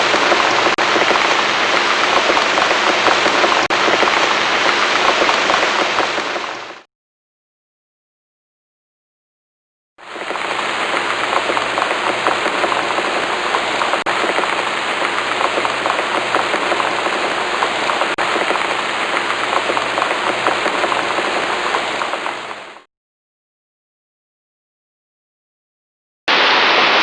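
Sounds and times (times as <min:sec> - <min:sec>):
heavy rain pattering: 0:00.0 - 0:06.9, 0:10.0 - 0:22.9, 0:26.3 - 0:27.0.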